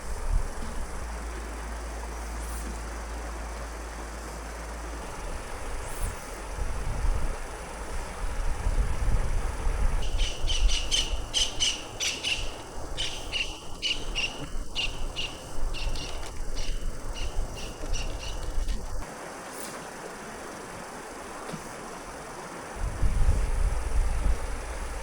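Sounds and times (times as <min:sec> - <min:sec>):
river water flowing: 0:01.0 - 0:25.0
bird chirping: 0:10.0 - 0:18.4.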